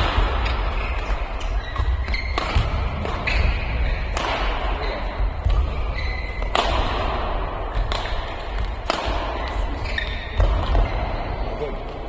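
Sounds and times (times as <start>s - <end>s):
rackets hitting shuttlecock: 0.0s - 12.0s
shoe squeaks on court: 0.2s - 4.1s, 4.7s - 6.6s, 9.4s - 11.6s.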